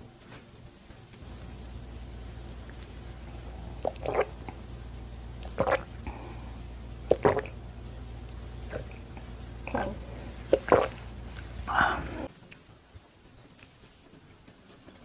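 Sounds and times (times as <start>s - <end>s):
steady low hum: 0.0s - 14.7s
wet mouth eating sounds: 2.6s - 4.7s, 5.4s - 7.6s, 8.6s - 12.3s.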